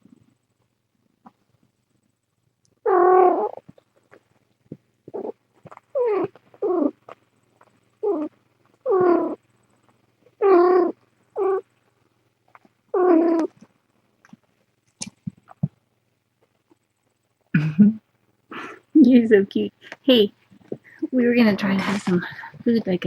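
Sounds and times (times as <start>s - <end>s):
cat meowing: 13.0s - 13.5s.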